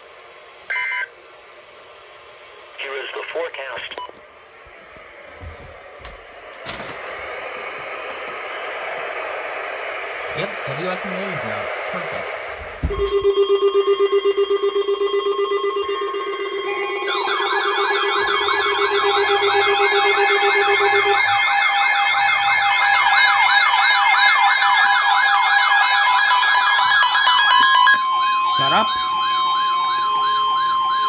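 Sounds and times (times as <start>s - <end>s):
warbling siren tones: 11.6s - 31.0s.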